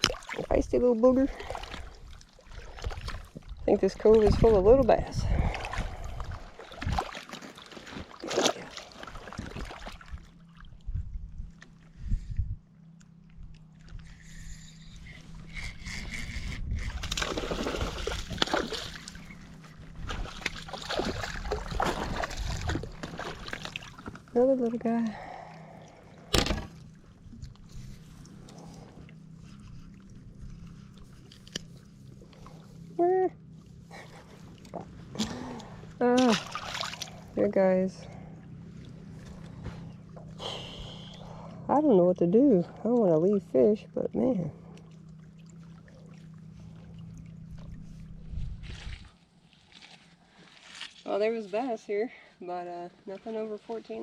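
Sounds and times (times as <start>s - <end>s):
faint steady hum: 0.0s - 54.0s
water sloshing against hull: 0.0s - 54.0s
short splash: 16.9s - 19.3s, 36.1s - 37.3s.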